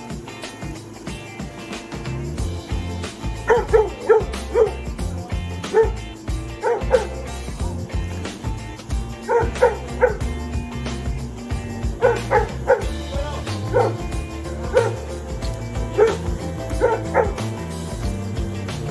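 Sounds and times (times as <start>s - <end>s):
background music: 0.0s - 18.9s
dog barking in high yips: 3.0s - 5.0s, 5.6s - 7.6s, 9.2s - 10.4s, 12.0s - 15.2s, 15.8s - 17.7s.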